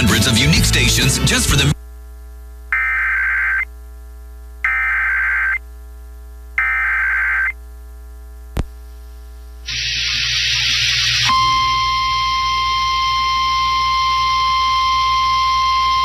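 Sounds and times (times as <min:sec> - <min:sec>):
steady low hum: 0:00.0 - 0:16.0
digital data tone bursts: 0:02.8 - 0:03.7, 0:04.7 - 0:05.6, 0:06.6 - 0:07.6, 0:09.7 - 0:16.0.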